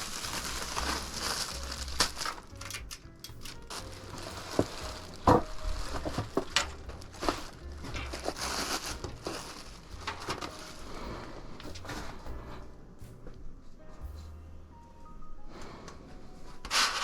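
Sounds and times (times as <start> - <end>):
packaging crinkling and rustling: 0.0 - 12.2, 16.6 - 17.0.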